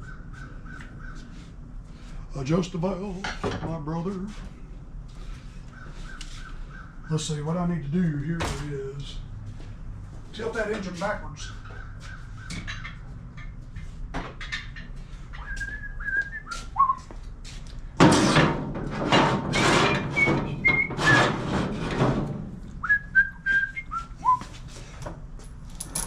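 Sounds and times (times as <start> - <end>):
person whistling: 15.4 - 17.1, 20.2 - 20.9, 22.8 - 24.5
clattering and knocking: 18.0 - 22.5.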